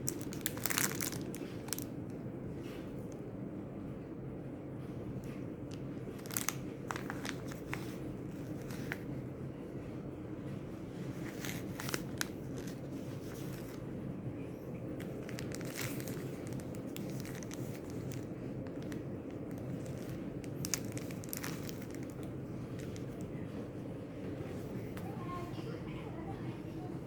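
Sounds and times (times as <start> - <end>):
packaging crinkling and rustling: 0.0 - 2.0, 5.7 - 9.2, 10.8 - 14.0, 14.8 - 23.4
low background hum: 0.0 - 27.0.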